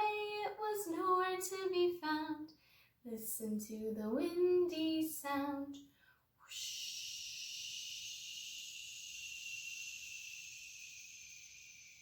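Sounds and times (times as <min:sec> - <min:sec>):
person imitating wind hiss: 0:06.4 - 0:12.0.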